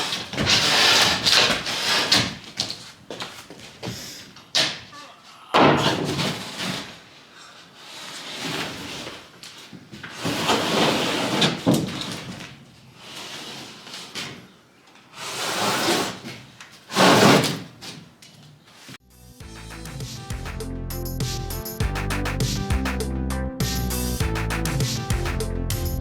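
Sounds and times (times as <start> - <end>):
plywood scraping against wood: 0.0 - 2.4, 5.8 - 7.2, 7.8 - 14.6, 15.2 - 18.0.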